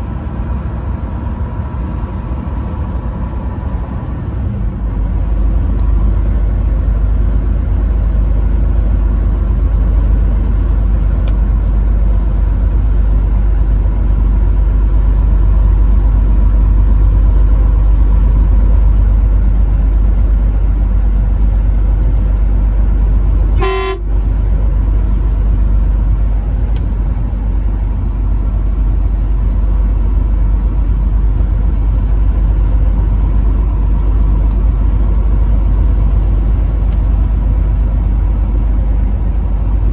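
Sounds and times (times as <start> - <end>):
truck driving rumble: 0.0 - 39.9
horn toot: 23.6 - 24.2.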